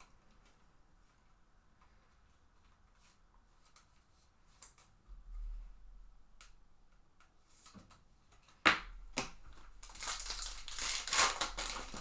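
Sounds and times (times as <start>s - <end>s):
foil wrapper crinkling: 9.8s - 12.0s
foil wrapper snapping: 9.8s - 12.0s.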